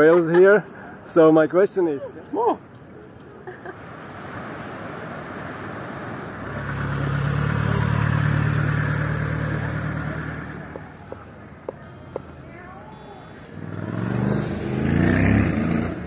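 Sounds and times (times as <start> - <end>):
vehicle passing by: 3.8 - 11.2, 13.5 - 16.0.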